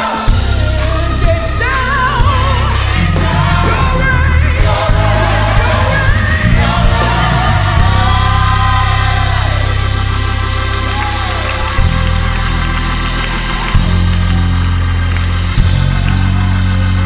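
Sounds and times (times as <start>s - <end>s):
lead voice singing long notes: 0.0s - 12.3s
bass and band accompaniment: 0.0s - 17.0s
gospel choir singing: 0.0s - 17.0s.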